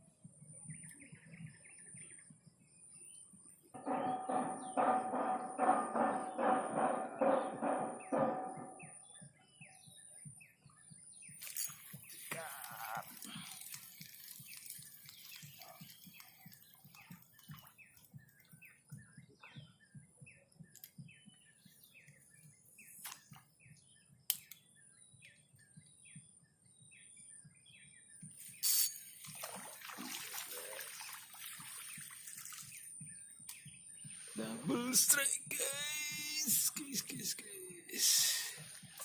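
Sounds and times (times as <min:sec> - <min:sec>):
small birds chirping: 0:00.0 - 0:39.0
sharp knock: 0:03.8 - 0:09.1.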